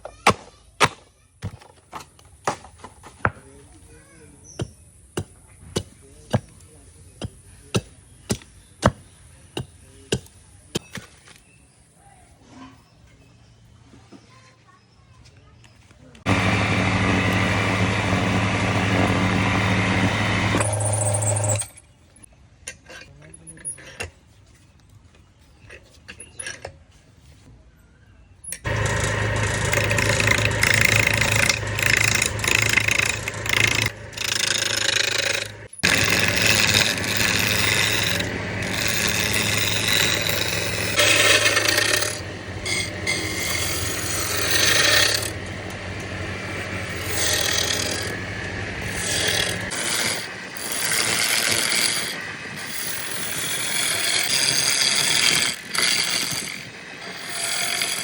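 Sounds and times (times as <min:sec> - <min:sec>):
motor hum: 0:16.2 - 0:21.8, 0:28.6 - 0:58.0
power tool rasping wood: 0:16.3 - 0:21.6, 0:28.6 - 0:58.0.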